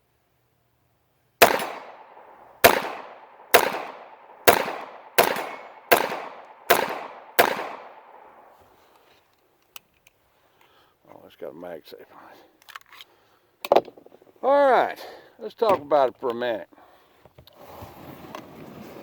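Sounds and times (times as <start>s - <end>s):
gunshots with echo: 1.4s - 8.6s.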